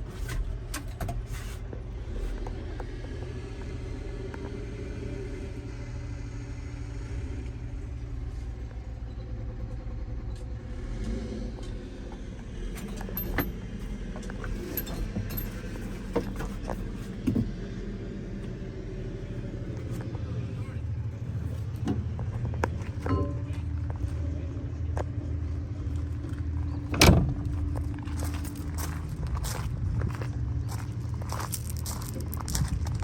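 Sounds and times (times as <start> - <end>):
diesel engine idling: 0.0 - 33.0
light clicks and rattles: 12.8 - 16.9.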